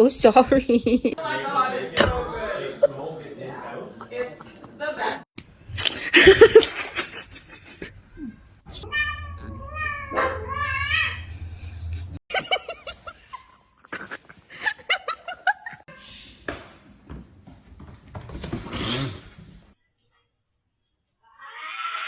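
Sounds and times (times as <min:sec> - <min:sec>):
person laughing: 0:02.0 - 0:03.0, 0:05.8 - 0:08.4
cat meowing: 0:08.7 - 0:12.0.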